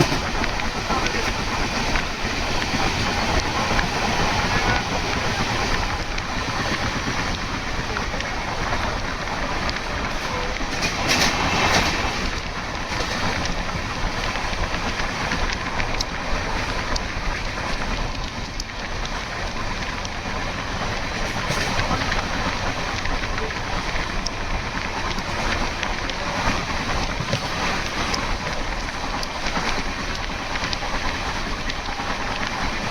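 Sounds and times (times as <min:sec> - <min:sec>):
train rumbling: 0:00.0 - 0:32.9
wheels clicking over rail joints: 0:00.0 - 0:32.9.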